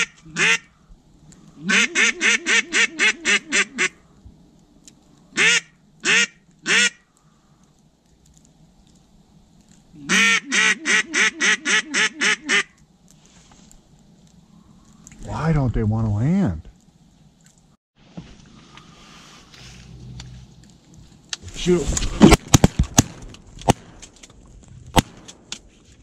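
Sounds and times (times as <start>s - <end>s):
duck call quacks: 0.0s - 0.7s, 1.6s - 4.0s, 5.4s - 7.0s, 10.0s - 12.8s.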